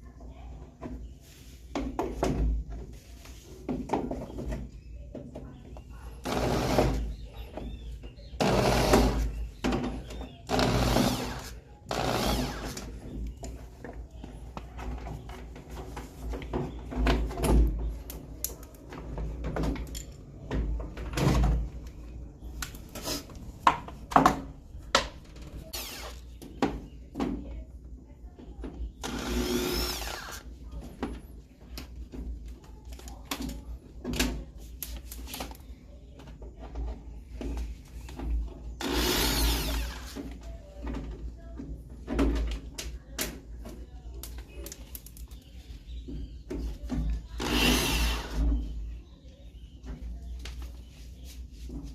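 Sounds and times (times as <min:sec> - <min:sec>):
power drill whirring: 0:06.2 - 0:07.1, 0:08.4 - 0:09.3, 0:10.5 - 0:12.9, 0:25.8 - 0:26.2, 0:29.0 - 0:30.5, 0:38.8 - 0:40.2, 0:47.4 - 0:48.4
knocks and clatter of machine parts: 0:13.0 - 0:21.8, 0:40.1 - 0:45.3.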